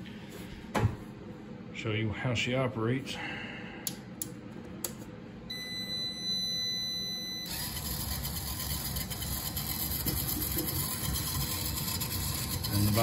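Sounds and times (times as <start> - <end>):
high-pitched motor whine: 6.5 - 13.0
motor turning chain-driven drum: 7.5 - 13.0.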